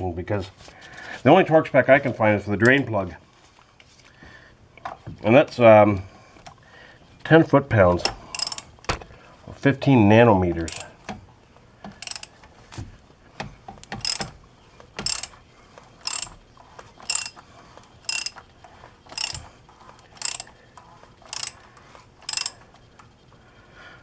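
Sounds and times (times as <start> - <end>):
hand ratchet clicking: 8.0 - 9.0, 10.6 - 10.9, 11.9 - 12.8, 13.8 - 14.4, 15.0 - 15.4, 16.0 - 16.4, 17.0 - 17.4, 18.1 - 18.4, 19.1 - 19.5, 20.2 - 20.5, 21.3 - 21.6, 22.2 - 22.6.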